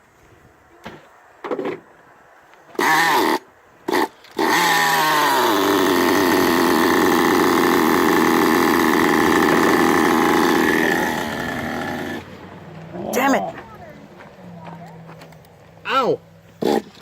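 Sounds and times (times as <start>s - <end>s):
small model car engine revving: 2.8s - 12.3s.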